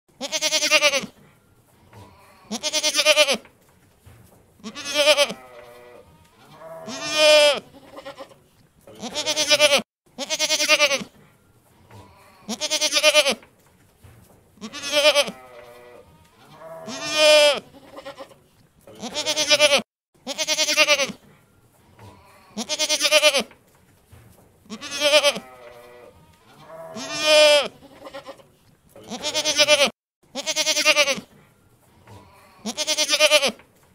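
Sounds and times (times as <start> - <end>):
goat bleating: 0.2 - 1.1, 1.9 - 3.4, 4.6 - 11.1, 11.9 - 13.4, 14.6 - 21.2, 22.0 - 23.5, 24.7 - 31.3, 32.0 - 33.6.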